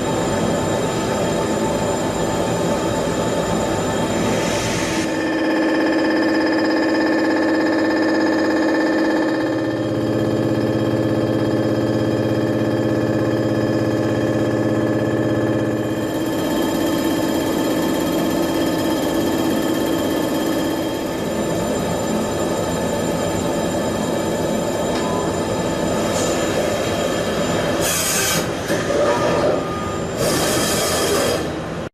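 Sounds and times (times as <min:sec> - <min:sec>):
machine tool humming: 0:00.0 - 0:31.9.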